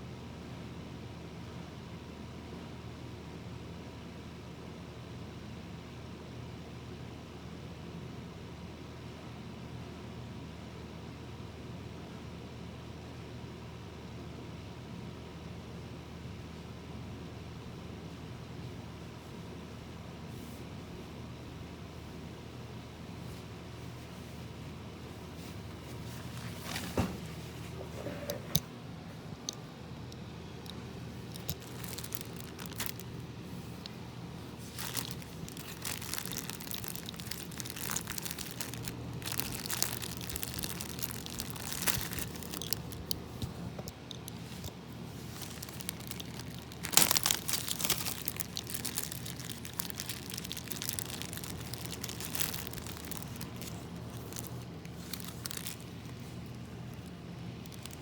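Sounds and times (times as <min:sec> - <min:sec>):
slime squeezed crackling pops: 0:31.4 - 0:33.0, 0:34.7 - 0:43.1, 0:45.4 - 0:55.8.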